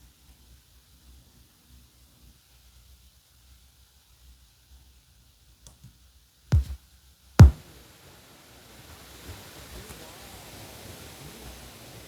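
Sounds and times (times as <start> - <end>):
sharp pops: 6.5 - 6.8, 7.4 - 7.7
radio white noise hiss: 7.4 - 12.0.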